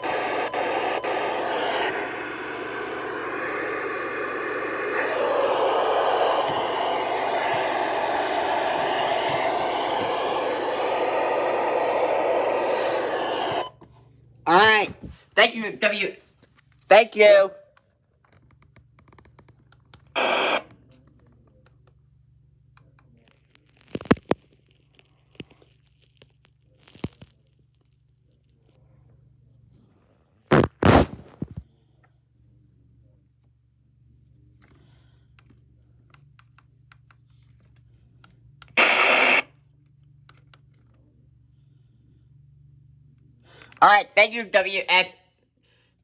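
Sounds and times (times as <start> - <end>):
radio static burst: 0.0 - 13.7, 14.5 - 16.0, 20.2 - 20.6, 30.5 - 31.3, 38.8 - 39.5
low steady hum: 0.0 - 14.4.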